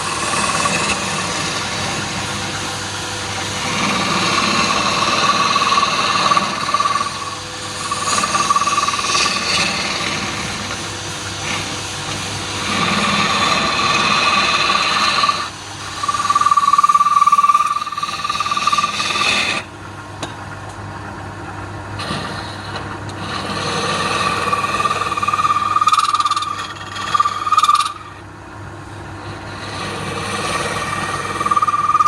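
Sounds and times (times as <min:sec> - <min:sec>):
turning tool whining on wood: 0:00.0 - 0:19.7, 0:22.0 - 0:28.2, 0:29.3 - 0:32.0
wood lathe humming: 0:00.0 - 0:19.7, 0:22.0 - 0:28.2, 0:29.0 - 0:32.0.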